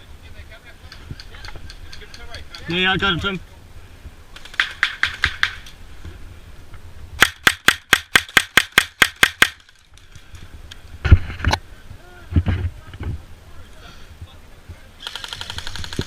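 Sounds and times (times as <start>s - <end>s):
airsoft gun firing shots: 7.2s - 9.6s.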